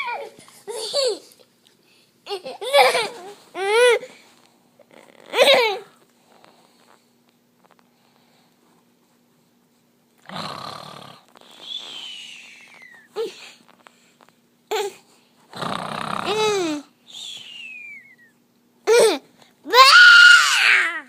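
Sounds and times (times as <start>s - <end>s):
man play-snoring: 10.2s - 11.4s, 15.5s - 16.8s
falling whistle on out-breath: 11.5s - 13.1s, 17.1s - 18.4s
small child squealing: 19.7s - 21.0s.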